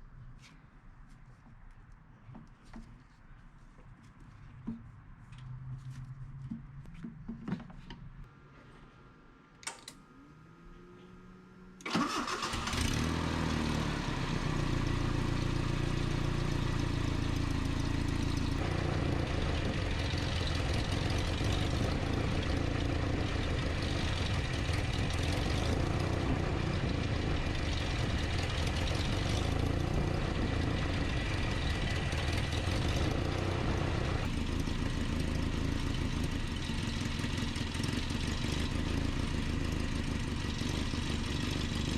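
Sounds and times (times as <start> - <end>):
truck engine starting and idling: 11.8 - 41.9.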